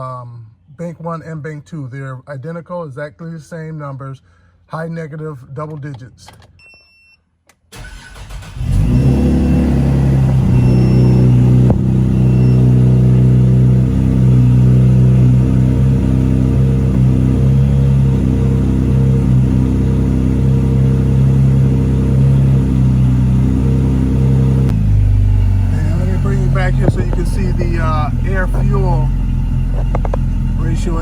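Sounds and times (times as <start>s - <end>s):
car engine idling: 7.8s - 31.0s.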